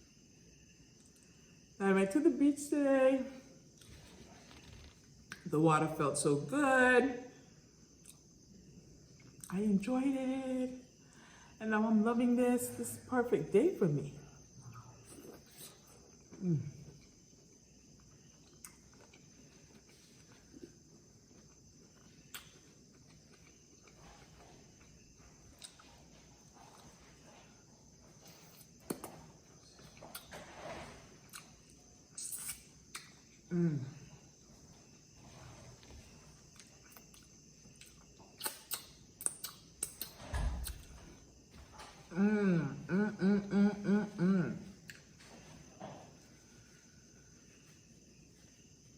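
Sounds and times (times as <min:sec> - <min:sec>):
person humming mmm: 0:16.3 - 0:16.8, 0:33.5 - 0:34.1, 0:42.1 - 0:44.8
chewing and mouth noises: 0:18.0 - 0:27.2, 0:36.4 - 0:40.8.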